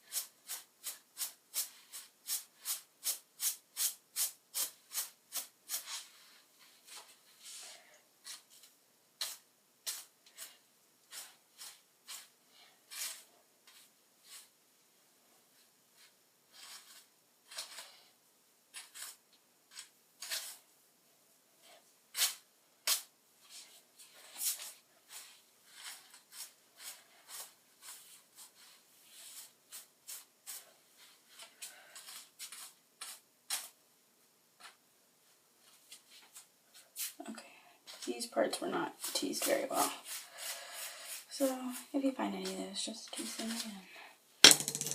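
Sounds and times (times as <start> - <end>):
hairbrush scratching through hair: 0.1 - 8.6, 12.9 - 14.5.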